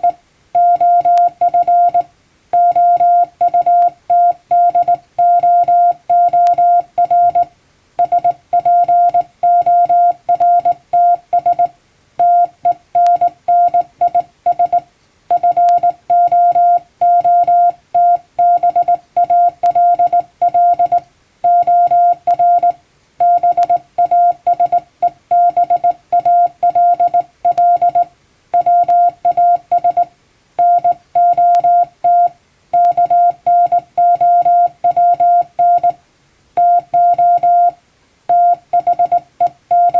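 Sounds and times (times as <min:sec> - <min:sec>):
morse code beeps: 0:00.0 - 0:36.0, 0:36.6 - 0:39.9.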